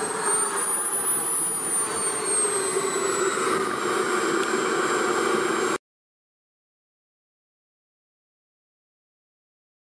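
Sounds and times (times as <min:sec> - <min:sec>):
model jet turbine whine: 0:00.0 - 0:05.8.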